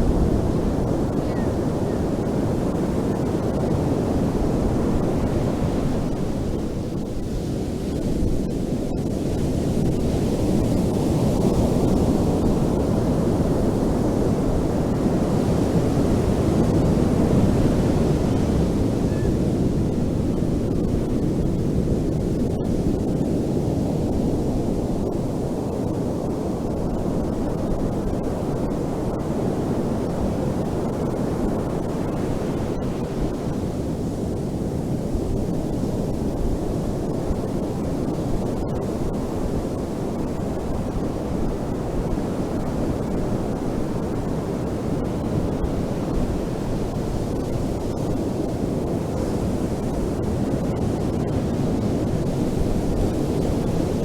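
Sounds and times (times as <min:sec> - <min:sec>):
ocean surf roar: 0:00.0 - 0:07.5.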